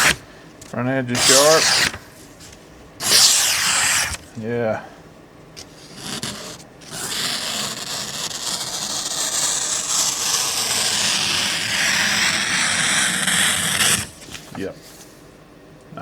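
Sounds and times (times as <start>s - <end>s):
knife slicing paper: 0.0s - 0.2s, 1.2s - 2.2s, 3.0s - 4.3s, 5.6s - 14.6s.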